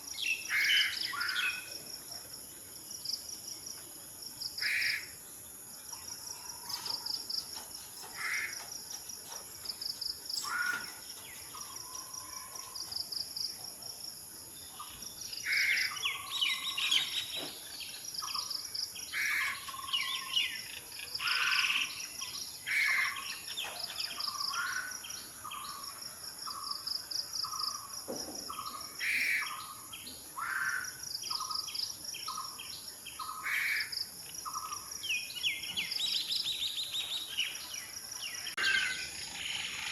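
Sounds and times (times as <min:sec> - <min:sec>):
high insect drone: 0:00.0 - 0:39.9
birds chirping: 0:04.0 - 0:13.6.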